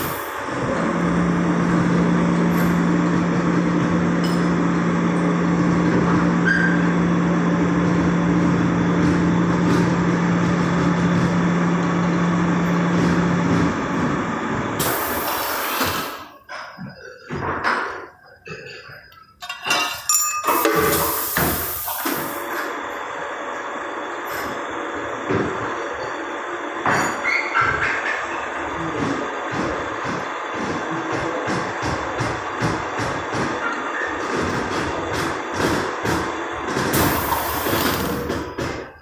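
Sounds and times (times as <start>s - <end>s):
lapping machine running: 0.0s - 16.3s, 20.5s - 39.0s
short sharp air hiss: 14.8s - 16.3s, 20.5s - 22.5s, 37.0s - 38.3s.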